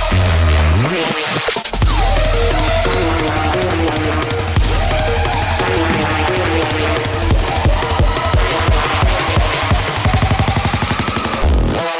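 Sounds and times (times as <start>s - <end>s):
electronic dance music: 5.6s - 9.8s
heavy kick-drum beat: 5.6s - 9.8s.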